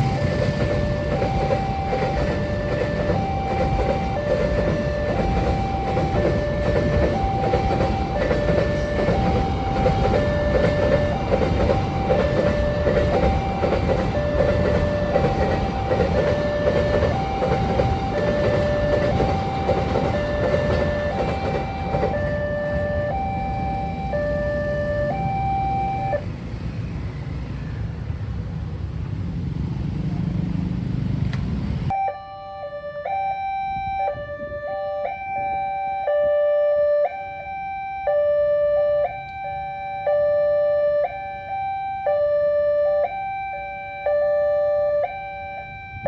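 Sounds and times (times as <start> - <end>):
wheels clattering over rails: 0.0 - 24.8
level-crossing two-tone alarm: 0.0 - 26.4, 31.9 - 46.0
train rumble: 0.0 - 32.0.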